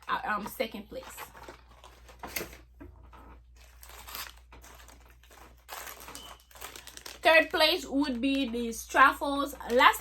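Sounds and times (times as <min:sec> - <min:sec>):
plastic packaging crinkling: 0:00.0 - 0:02.7, 0:03.3 - 0:10.0
sharp crackle of packaging: 0:03.6 - 0:08.6.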